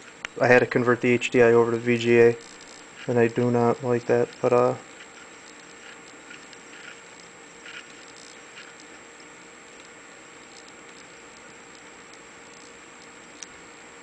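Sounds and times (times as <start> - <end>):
background hiss: 0.0 - 14.0
faint high whine: 0.0 - 14.0.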